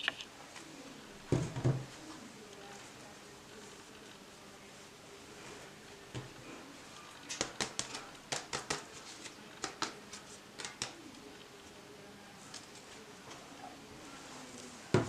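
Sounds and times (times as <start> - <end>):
light sharp clicks and taps: 9.5 - 11.6.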